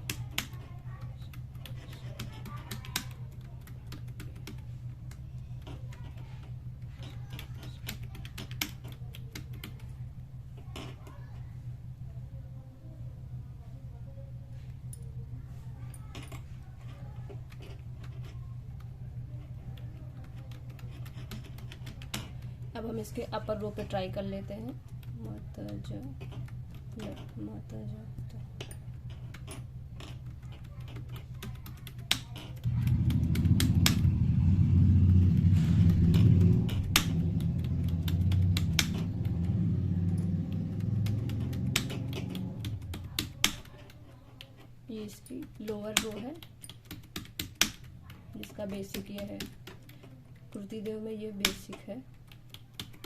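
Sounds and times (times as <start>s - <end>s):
steady low hum: 0.0s - 53.0s
steady low rumble: 32.6s - 43.4s
keyboard keys clicking: 35.2s - 44.6s, 45.4s - 53.0s.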